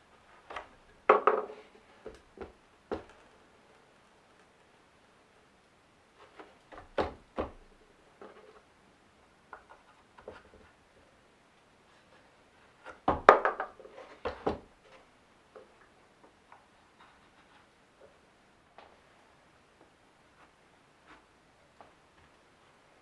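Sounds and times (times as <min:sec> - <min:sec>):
wooden knocks and clatter: 0:00.5 - 0:03.2, 0:06.4 - 0:08.5, 0:12.8 - 0:15.0.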